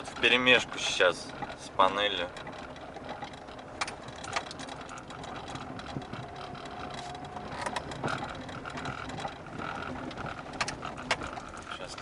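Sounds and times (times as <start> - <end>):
dashboard panel crackling: 0.0 - 12.0
road and tyre rumble: 0.0 - 12.0
suspension knocks and clicks: 0.0 - 12.0.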